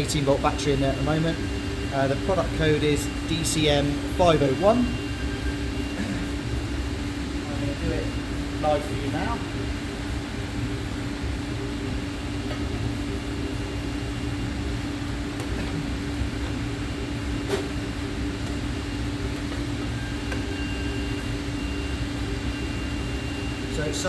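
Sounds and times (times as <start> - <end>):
machine humming with low rumble: 0.0 - 24.0.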